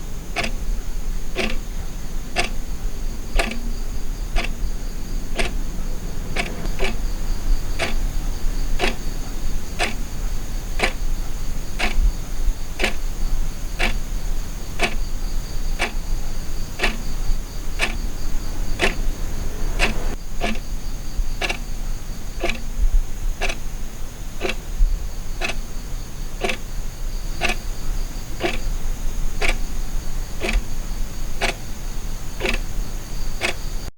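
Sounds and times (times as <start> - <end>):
wall clock ticking: 0.0 - 20.7, 21.4 - 21.7, 22.4 - 22.8, 23.4 - 23.6, 24.4 - 24.7, 25.4 - 25.7, 26.4 - 26.6, 27.4 - 29.7, 30.3 - 30.7, 31.3 - 31.8, 32.4 - 32.8, 33.4 - 33.6.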